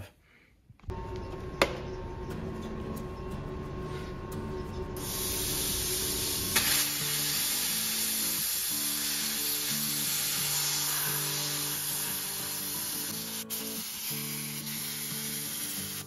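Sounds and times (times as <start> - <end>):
loud steady hiss: 5.0 - 16.0.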